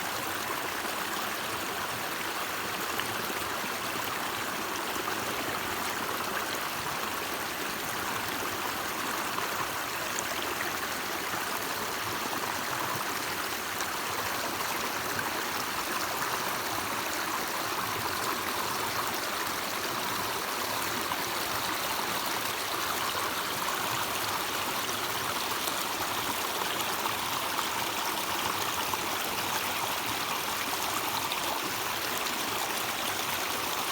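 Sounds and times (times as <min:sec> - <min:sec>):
stream flowing over rocks: 0:00.1 - 0:33.9.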